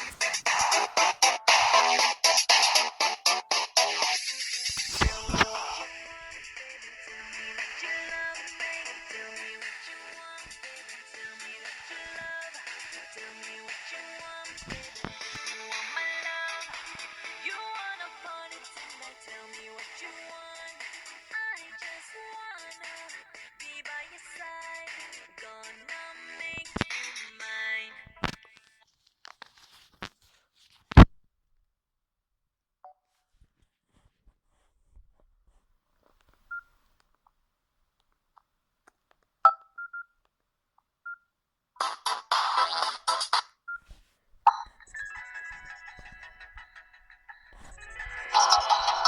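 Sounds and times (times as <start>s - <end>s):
phone ringtone melody: 44.7s - 49.0s.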